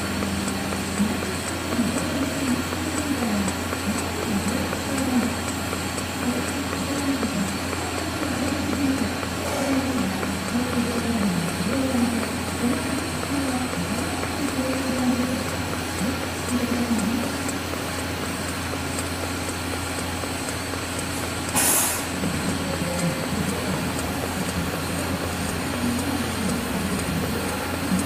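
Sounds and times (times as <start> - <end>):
low mechanical hum: 0.0 - 28.0
short burst of hiss: 21.6 - 22.1.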